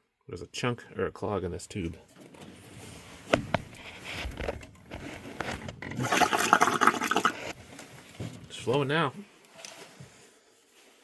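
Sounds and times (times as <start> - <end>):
water gurgling out of drain tube: 6.0 - 7.6.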